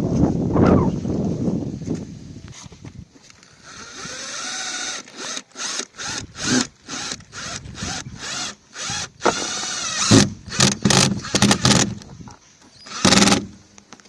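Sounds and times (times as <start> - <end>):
power drill driving screws: 3.6 - 12.0, 12.8 - 13.6.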